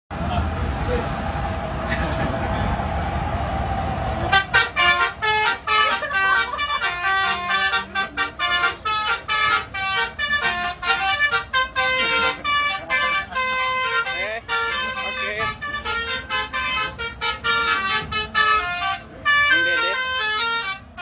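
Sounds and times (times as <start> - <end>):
multi-tone horn melody: 4.2 - 21.0.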